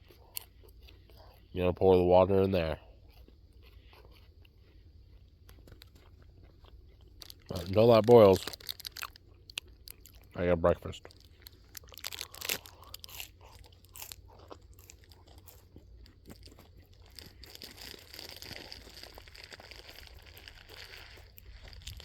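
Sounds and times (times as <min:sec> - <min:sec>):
person chewing crunchy food: 0:00.0 - 0:22.0.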